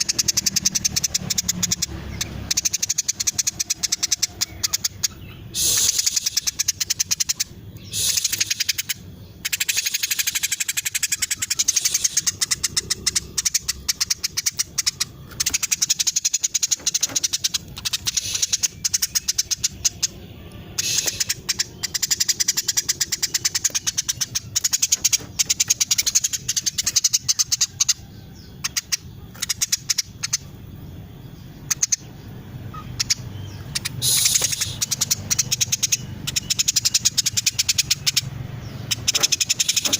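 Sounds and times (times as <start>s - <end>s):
sparrow chirping: 0.0s - 39.9s.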